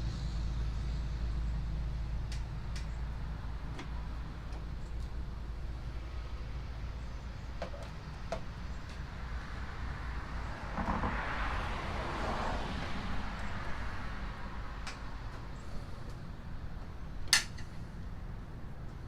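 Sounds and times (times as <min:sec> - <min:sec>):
vehicle passing by: 0:09.2 - 0:16.6.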